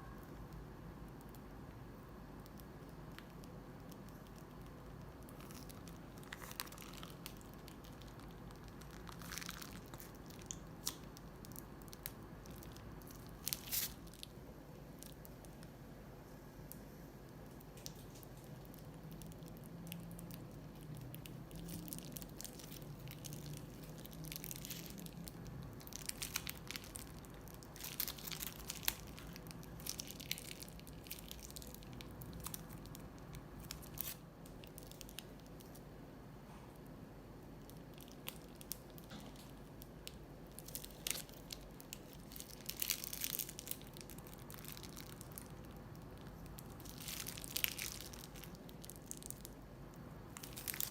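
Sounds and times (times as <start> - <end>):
faint steady hum: 0.0 - 50.9
wet slime squelches: 2.3 - 15.7
crinkling handling noises: 2.4 - 15.7, 16.6 - 35.9, 37.5 - 50.9.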